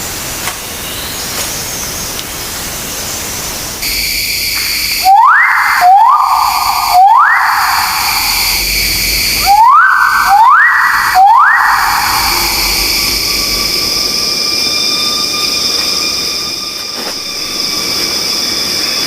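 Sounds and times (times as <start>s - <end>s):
steady high hiss: 0.0s - 19.0s.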